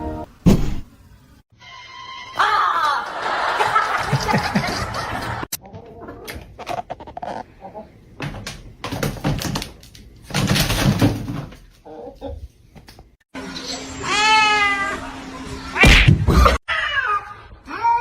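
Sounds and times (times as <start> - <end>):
people laughing hard: 2.4 - 5.5.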